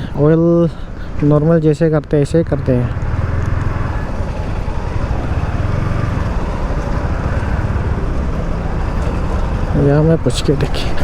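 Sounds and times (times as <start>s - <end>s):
road noise: 0.0s - 11.0s
motorcycle engine running: 2.3s - 11.0s.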